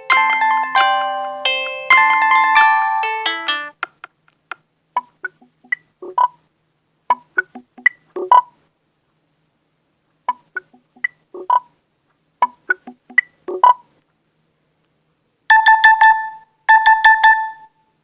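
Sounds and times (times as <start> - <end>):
phone alarm plucked notes: 0.0 - 3.7, 15.5 - 17.7.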